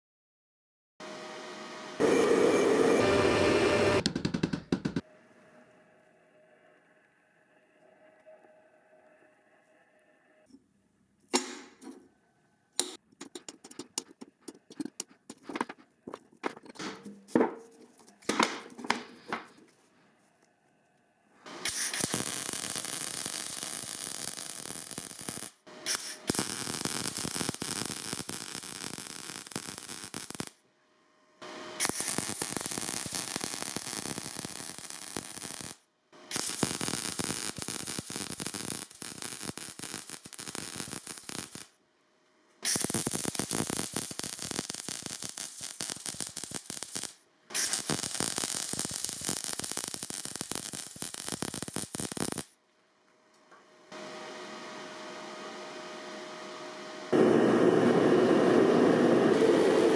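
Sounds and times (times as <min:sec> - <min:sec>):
tool clicks and scrapes: 0:12.8 - 0:19.8
loud steady hiss: 0:21.5 - 0:30.6, 0:57.1 - 0:59.9.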